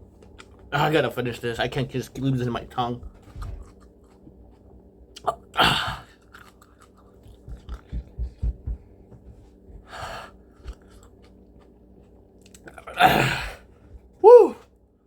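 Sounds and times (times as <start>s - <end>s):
man chewing: 0.1s - 0.7s, 3.0s - 8.5s, 9.8s - 13.0s
soft low thuds: 7.4s - 9.9s.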